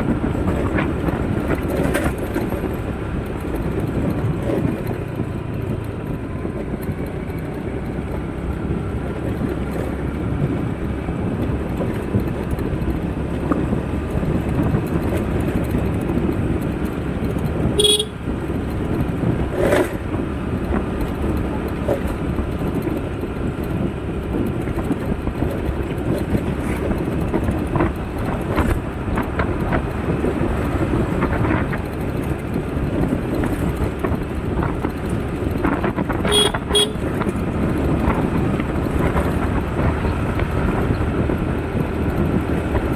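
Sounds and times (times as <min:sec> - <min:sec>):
traffic rumble: 0:00.0 - 0:42.9
car horn toots: 0:17.6 - 0:18.4, 0:36.2 - 0:37.2.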